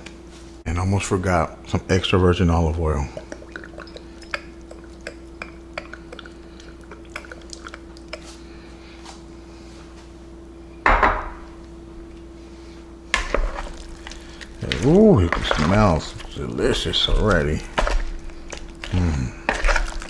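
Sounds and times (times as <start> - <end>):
steady hum: 0.0 - 20.0
dishes and utensils clinking: 10.9 - 11.5.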